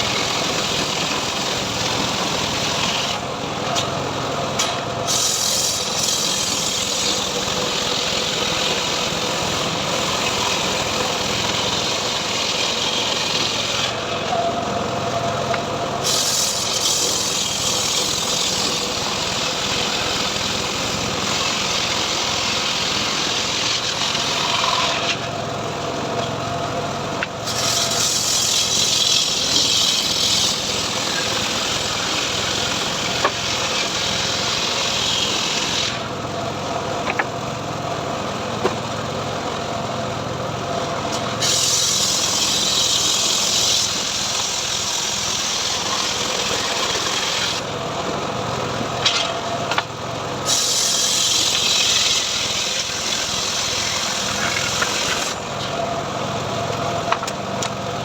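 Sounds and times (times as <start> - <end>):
saw blade rasping through wood: 0.0 - 4.0, 4.6 - 14.5, 16.0 - 25.3, 27.4 - 36.1, 41.1 - 47.7, 50.4 - 55.8
sawmill engine running: 0.0 - 58.0.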